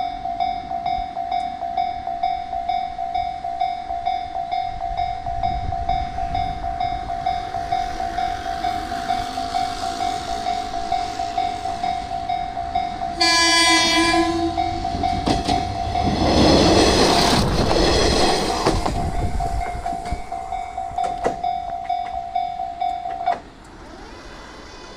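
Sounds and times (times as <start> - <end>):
level-crossing alarm ringing: 0.0 - 23.4
railcar rumbling past: 0.0 - 24.9
train horn: 13.1 - 15.2.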